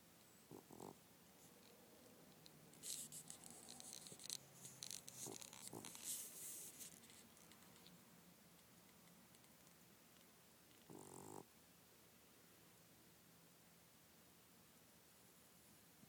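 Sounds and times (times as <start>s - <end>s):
cat snoring softly: 0.5s - 1.0s, 10.8s - 11.5s
faint rustling and rubbing: 2.7s - 8.0s.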